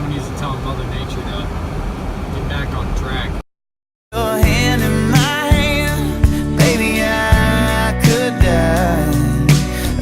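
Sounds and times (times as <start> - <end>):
song with drum hits: 4.4 - 8.9.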